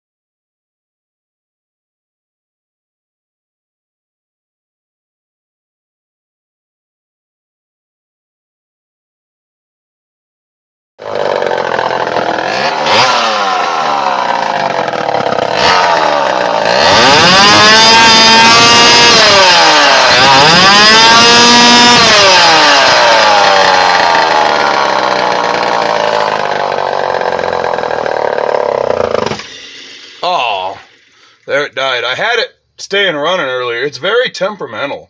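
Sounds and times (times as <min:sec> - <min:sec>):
chainsaw running and revving: 0:11.0 - 0:31.1.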